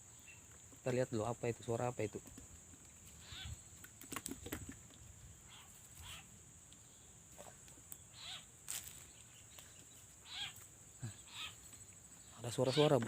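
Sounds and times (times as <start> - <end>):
high insect buzz: 0.0 - 13.0
frog squeaky distress cries: 3.2 - 3.6, 5.4 - 6.3, 8.1 - 8.5, 10.2 - 11.6, 12.6 - 13.0
clicks and rustles: 3.8 - 5.1.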